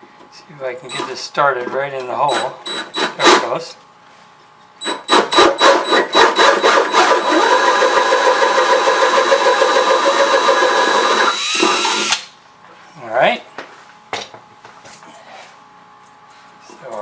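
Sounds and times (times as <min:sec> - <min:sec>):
power drill boring into wood: 0:04.8 - 0:12.2.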